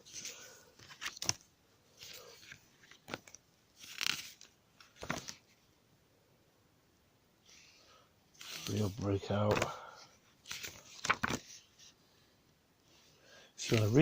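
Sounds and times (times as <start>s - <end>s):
paper pages turning: 0.1s - 5.6s, 8.4s - 9.8s, 10.4s - 12.0s, 13.6s - 14.0s.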